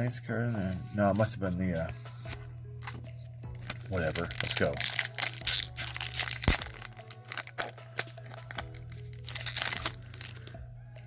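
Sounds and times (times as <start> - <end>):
faint background music: 0.0 - 11.0
foil wrapper tearing and crinkling: 3.5 - 10.6.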